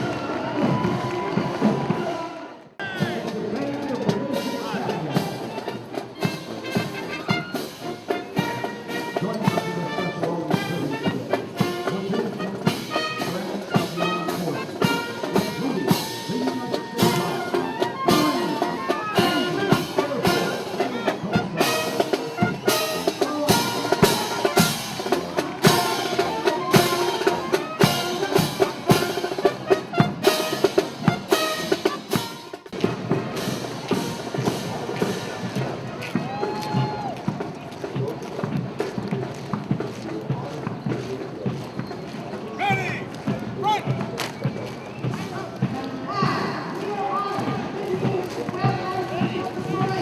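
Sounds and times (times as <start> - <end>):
brass band playing: 0.0 - 39.0
drums steady beat: 2.8 - 50.0.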